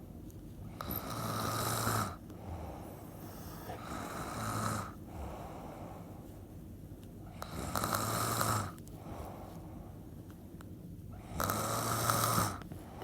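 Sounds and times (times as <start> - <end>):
quiet breathing: 0.5 - 7.7, 8.6 - 10.2, 11.1 - 13.0
loud snoring: 0.8 - 2.2, 3.2 - 5.0, 7.4 - 8.8, 11.2 - 12.6.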